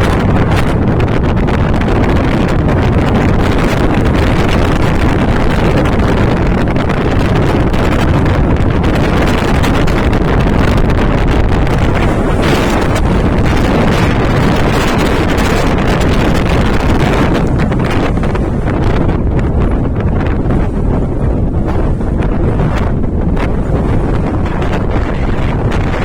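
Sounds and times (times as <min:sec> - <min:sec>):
gale wind buffeting microphone: 0:00.0 - 0:26.0.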